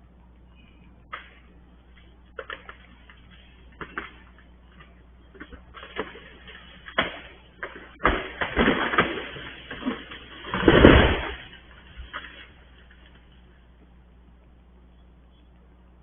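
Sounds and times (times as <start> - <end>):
loud sharp cracks and bangs: 5.8 - 11.5.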